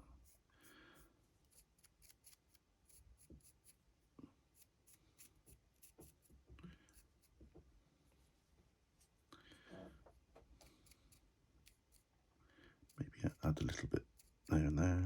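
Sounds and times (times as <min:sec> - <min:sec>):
paintbrush scratching and tapping: 0:01.5 - 0:03.8, 0:04.6 - 0:07.7, 0:12.9 - 0:14.6.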